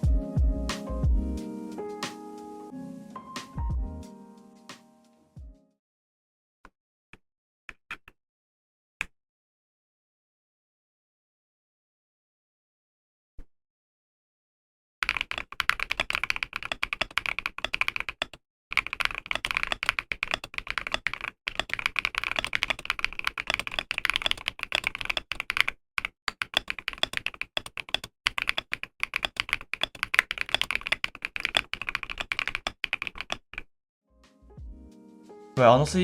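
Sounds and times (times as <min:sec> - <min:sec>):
mechanical keyboard typing: 0:15.0 - 0:33.7.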